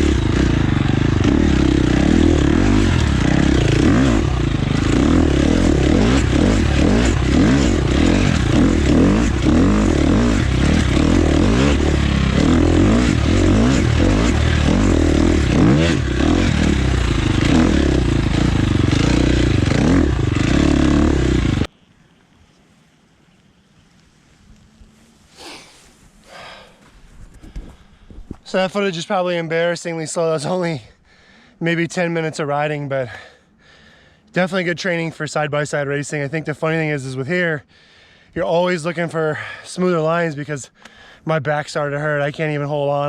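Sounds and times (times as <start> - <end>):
dirt bike engine revving: 0.0 - 21.7.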